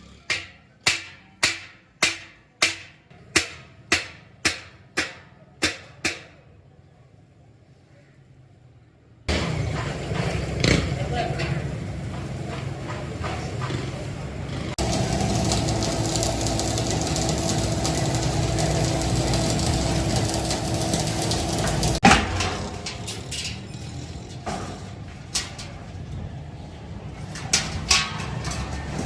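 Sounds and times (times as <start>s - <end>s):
workshop machine humming: 9.3s - 23.7s
metal knocks and clicks: 14.8s - 23.7s, 27.3s - 29.0s
loud metal clank: 14.8s - 26.0s, 27.3s - 29.0s.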